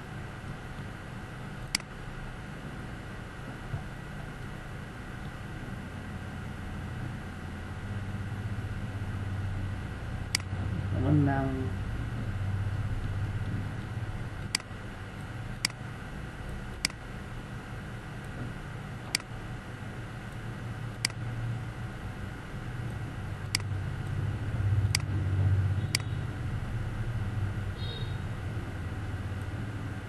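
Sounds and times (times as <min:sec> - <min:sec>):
low background hum: 0:00.0 - 0:30.0
computer mouse clicking: 0:01.6 - 0:01.9, 0:13.0 - 0:15.8, 0:16.4 - 0:17.0, 0:19.0 - 0:19.3, 0:20.3 - 0:21.2, 0:22.8 - 0:24.2, 0:24.9 - 0:25.1.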